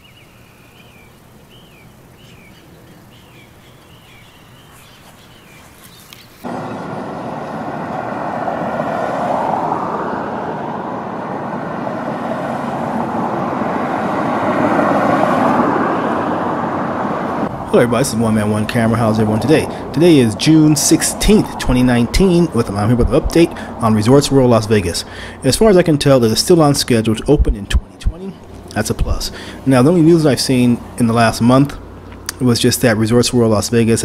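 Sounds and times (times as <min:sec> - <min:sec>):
bird chirping: 0:00.0 - 0:06.9
street traffic rushing: 0:04.8 - 0:34.0.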